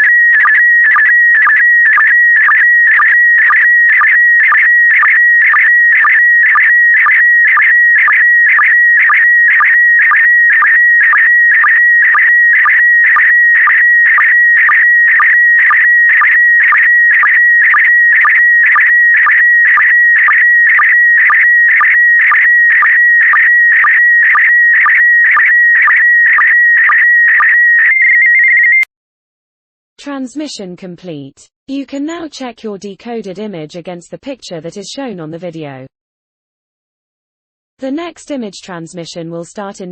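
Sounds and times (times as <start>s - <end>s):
warbling electronic tone: 0.0s - 28.8s.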